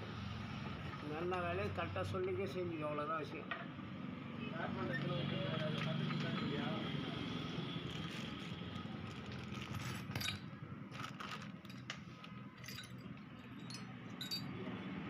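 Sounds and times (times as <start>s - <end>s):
metal parts clinking and scraping: 9.5s - 14.6s.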